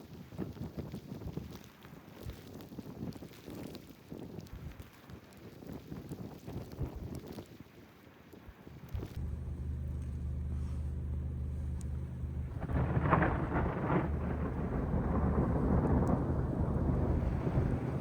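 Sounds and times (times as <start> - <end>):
thunder rumbling: 9.2 - 18.0.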